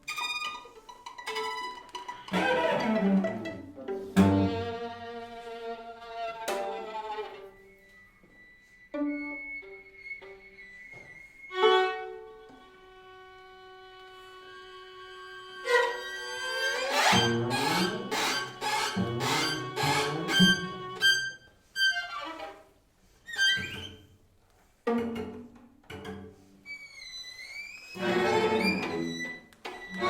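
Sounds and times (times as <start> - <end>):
string quartet playing: 0.0 - 22.6, 27.8 - 30.0.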